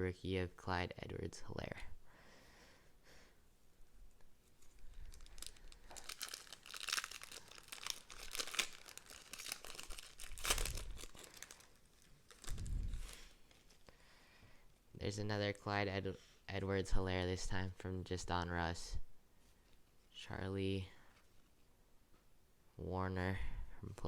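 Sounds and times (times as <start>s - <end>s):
cards and packaging crinkling: 4.5s - 13.9s.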